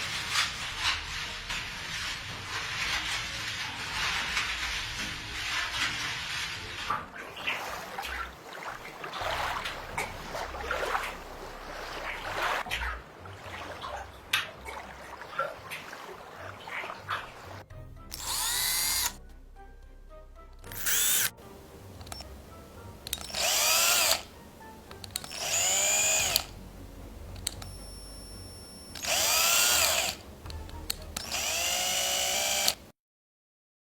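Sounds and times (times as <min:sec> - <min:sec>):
power drill whining: 0:18.1 - 0:19.2, 0:20.7 - 0:21.4, 0:23.1 - 0:24.3, 0:25.0 - 0:26.6, 0:27.5 - 0:32.9.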